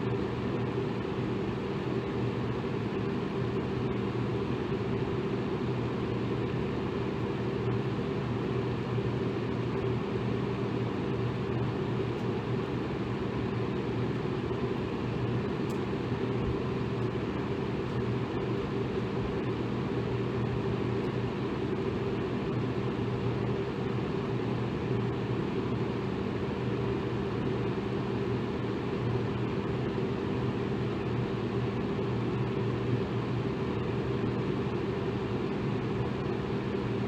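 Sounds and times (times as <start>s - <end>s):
electric fan running: 0.0s - 37.0s.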